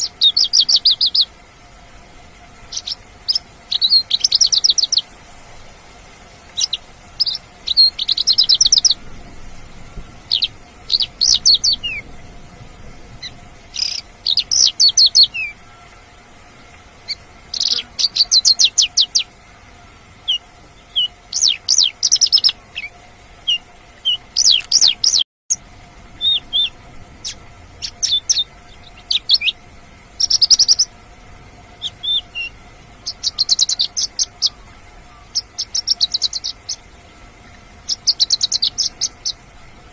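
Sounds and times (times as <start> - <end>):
lark singing chirps and trills: 0.0 - 1.4, 2.6 - 5.2, 6.4 - 9.2, 10.2 - 12.2, 13.1 - 16.0, 17.0 - 19.3, 20.2 - 25.6, 26.2 - 31.0, 31.7 - 37.0, 37.8 - 39.5
faint steady hum: 0.0 - 39.9.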